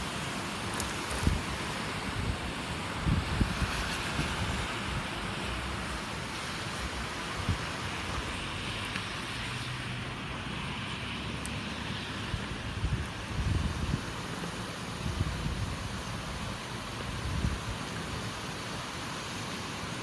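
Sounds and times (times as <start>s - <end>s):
steady rain: 0.0s - 20.0s
wind buffeting microphone: 1.1s - 5.2s, 12.2s - 14.4s, 15.0s - 17.8s.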